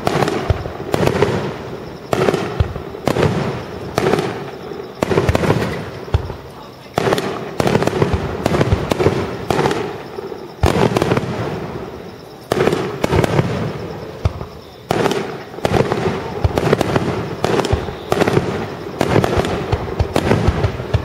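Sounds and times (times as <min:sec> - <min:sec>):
firework pops and crackles: 0:00.0 - 0:11.6, 0:12.5 - 0:21.0
firework booms: 0:00.0 - 0:21.0.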